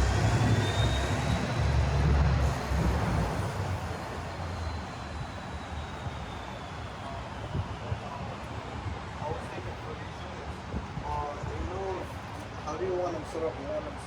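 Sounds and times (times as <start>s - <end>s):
heavy vehicle rumble passing: 0.0s - 5.4s.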